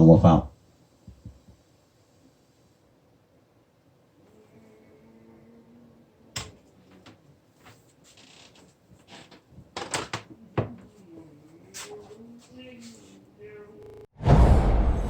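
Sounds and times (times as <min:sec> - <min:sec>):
heavy thump: 0:14.2 - 0:15.0.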